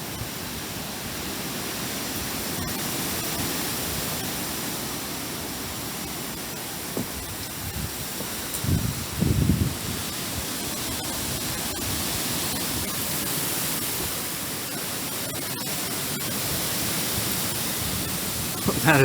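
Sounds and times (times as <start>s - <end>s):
strong wind: 7.6s - 10.0s
wind buffeting microphone: 7.6s - 10.0s
heavy rain: 14.3s - 19.0s.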